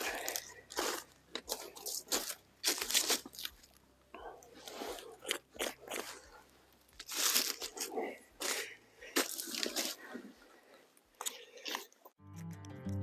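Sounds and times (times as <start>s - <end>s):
footsteps crunching on forest floor: 0.0s - 3.7s.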